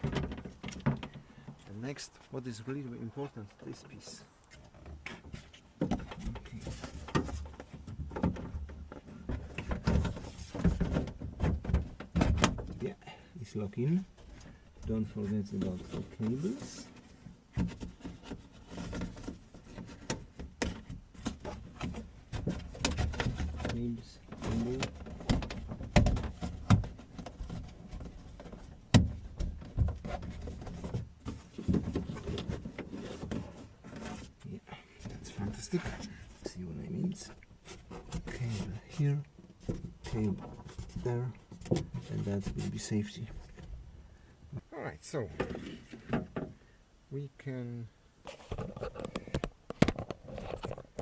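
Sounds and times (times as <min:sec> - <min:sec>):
soft handling knocks: 0:35.0 - 0:43.8.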